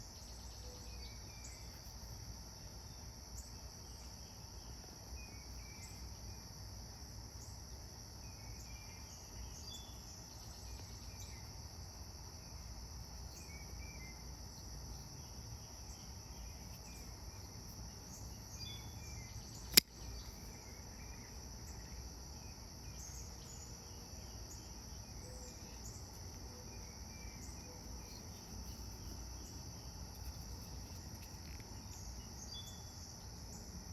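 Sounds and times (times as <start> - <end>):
crickets chirping: 0.0 - 33.9
sharp click: 19.6 - 20.0.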